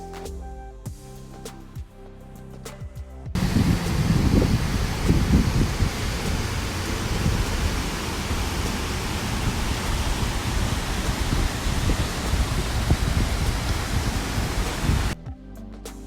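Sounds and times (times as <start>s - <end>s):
loud rushing noise: 3.4s - 15.2s
low rumbling: 3.4s - 15.2s.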